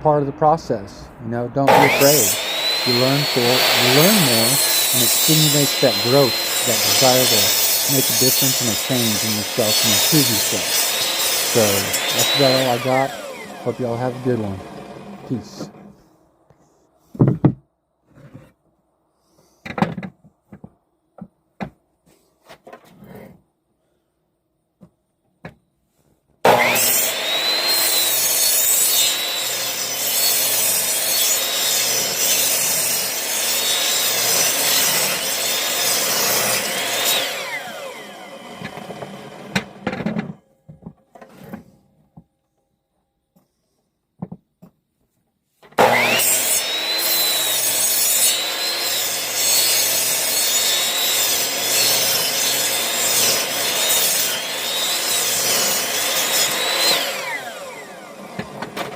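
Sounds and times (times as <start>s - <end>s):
power saw cutting wood: 1.6s - 16.0s, 26.4s - 40.4s, 45.8s - 58.9s
knocks: 17.2s - 17.6s.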